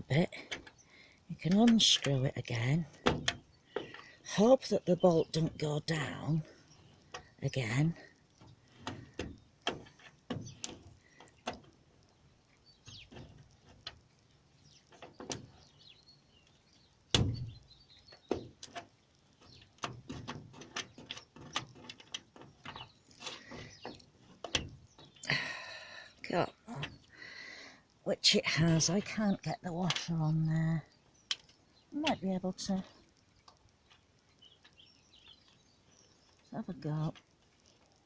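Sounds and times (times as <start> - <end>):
bolt clicking and scraping in hinge: 17.1 - 25.2.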